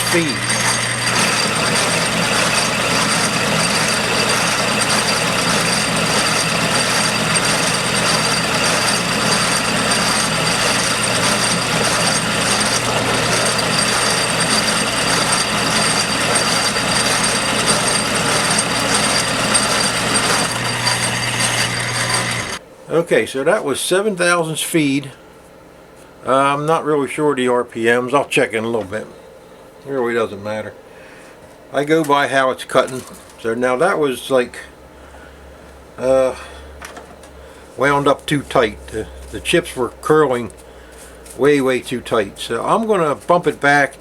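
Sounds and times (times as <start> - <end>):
metal lathe whirring and clattering: 0.0 - 22.6.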